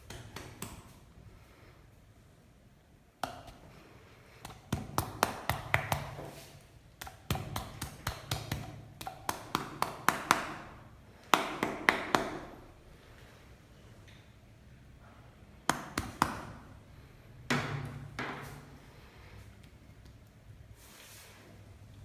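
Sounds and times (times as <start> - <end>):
hands tapping and slapping on body: 0.0 - 1.0, 4.4 - 12.7, 15.6 - 16.7.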